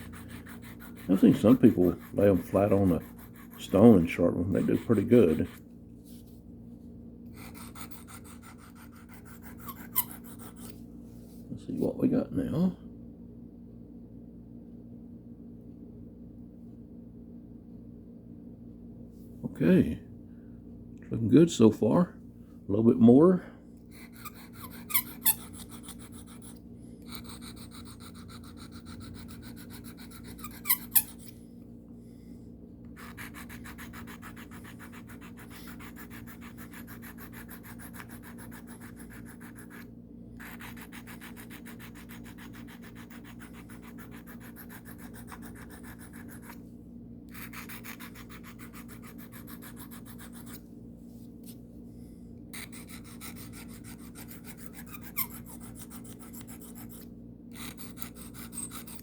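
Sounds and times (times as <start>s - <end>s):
knife scraping on sharpening stone: 57.6s - 59.0s.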